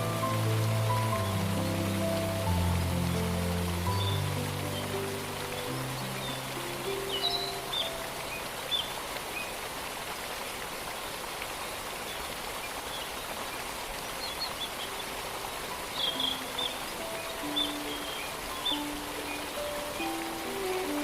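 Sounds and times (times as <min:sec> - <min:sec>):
soft music notes: 0:00.0 - 0:08.5, 0:14.8 - 0:21.0
small birds chirping: 0:00.0 - 0:09.6, 0:12.1 - 0:21.0
distant waterfall rushing: 0:00.0 - 0:21.0.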